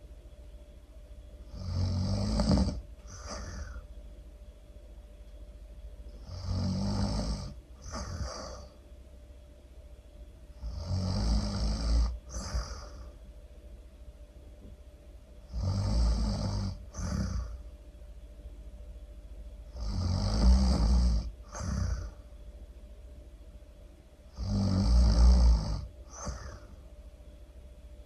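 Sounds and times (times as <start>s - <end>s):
person snoring loudly: 1.5s - 3.8s, 6.2s - 8.8s, 10.6s - 13.1s, 15.5s - 17.6s, 19.7s - 22.2s, 24.3s - 26.8s.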